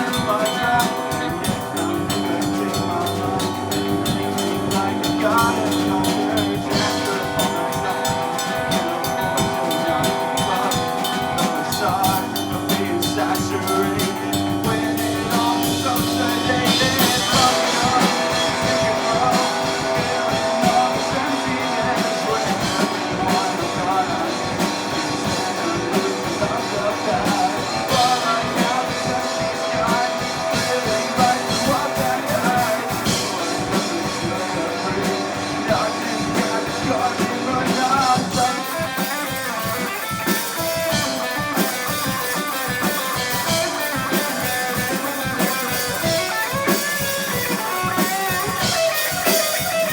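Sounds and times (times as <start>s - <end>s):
drum kit steady beat: 0.0s - 49.9s
electric guitar: 0.0s - 49.9s.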